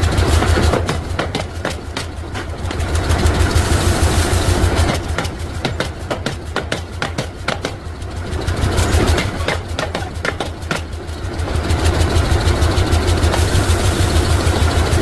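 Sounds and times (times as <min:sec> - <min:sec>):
machinery humming: 0:00.0 - 0:15.0
sharp knocks: 0:00.4 - 0:02.2, 0:04.9 - 0:07.8, 0:09.1 - 0:10.9
hissing rush: 0:02.8 - 0:05.6, 0:11.9 - 0:15.0.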